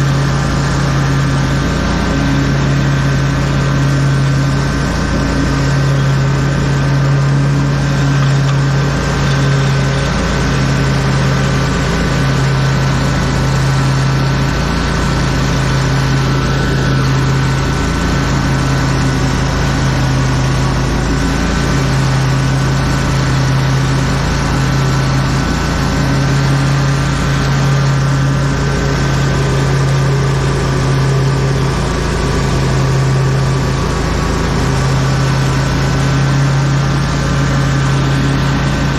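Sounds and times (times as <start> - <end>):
lawn mower engine running: 0.0 - 38.9.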